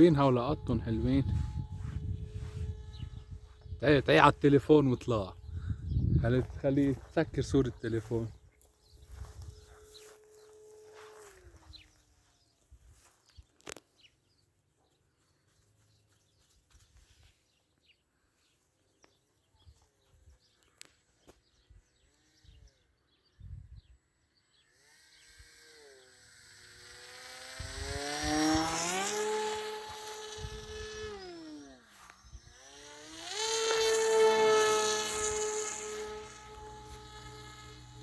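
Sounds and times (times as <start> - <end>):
model plane motor buzzing: 0.0 - 6.2, 7.8 - 12.1, 24.0 - 38.0.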